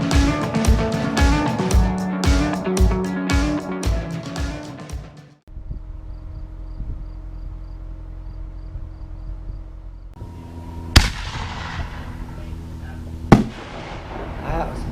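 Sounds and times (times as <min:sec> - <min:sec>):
steady low rumble: 0:05.5 - 0:14.9
loud sharp bang: 0:11.0 - 0:12.4, 0:13.3 - 0:14.6.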